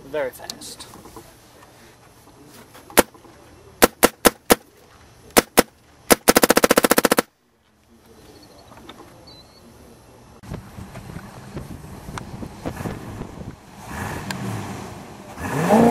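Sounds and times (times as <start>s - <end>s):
paintball marker firing: 3.8s - 4.7s, 5.3s - 7.3s.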